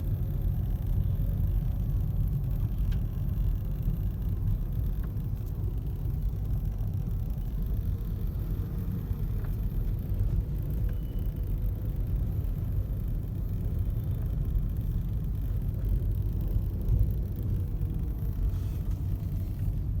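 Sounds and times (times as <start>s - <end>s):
road and engine rumble in car: 0.0s - 20.0s.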